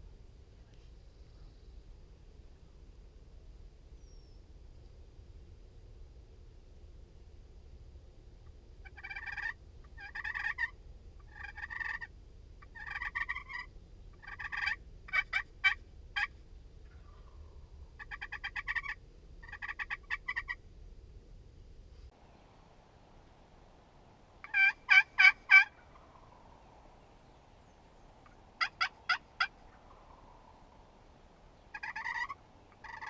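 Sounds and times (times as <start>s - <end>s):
wild turkey rattling calls: 8.4s - 20.6s, 24.4s - 27.0s, 27.7s - 33.0s.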